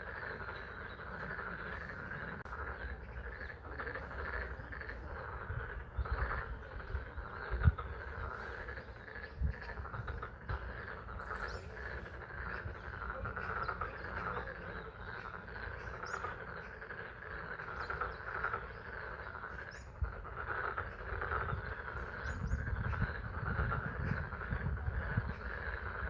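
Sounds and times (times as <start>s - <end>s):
frogs calling: 0.0s - 26.0s.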